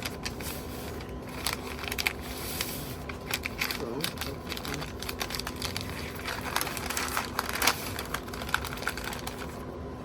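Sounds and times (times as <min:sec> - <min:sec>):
paper crinkling and rustling: 0:00.0 - 0:09.8.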